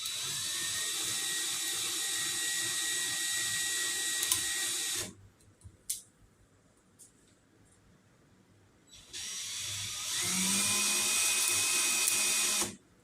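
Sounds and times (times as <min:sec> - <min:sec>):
drill motor spinning: 0:00.0 - 0:05.1, 0:09.0 - 0:12.8.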